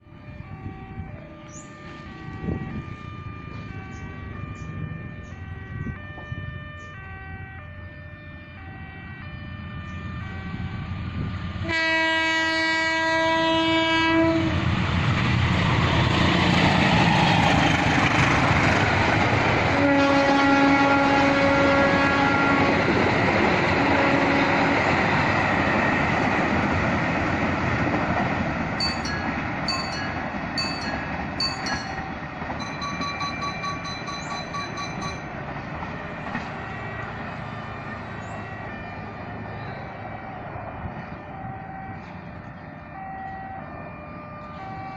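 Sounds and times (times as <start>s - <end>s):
train wheels rumbling on rail: 8.7s - 44.9s
train horn blasts: 11.6s - 14.7s, 19.7s - 25.1s.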